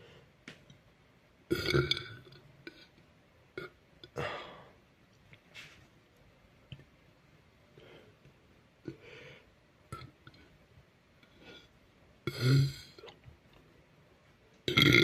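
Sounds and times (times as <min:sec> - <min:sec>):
faint breathing: 0:07.7 - 0:08.3, 0:08.9 - 0:09.6.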